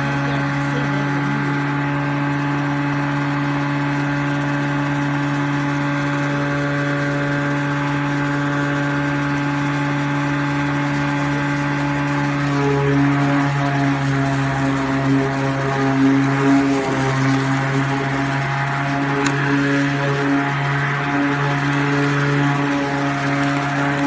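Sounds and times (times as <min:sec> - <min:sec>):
electric lawn mower humming: 0:00.0 - 0:24.0.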